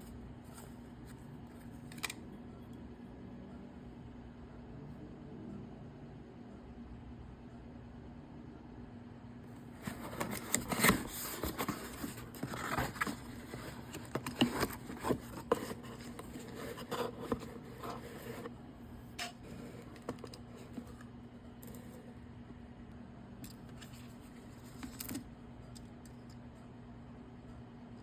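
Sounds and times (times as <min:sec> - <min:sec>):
faint steady hum: 0:00.0 - 0:28.0
packaging scratching and scraping: 0:09.7 - 0:18.5.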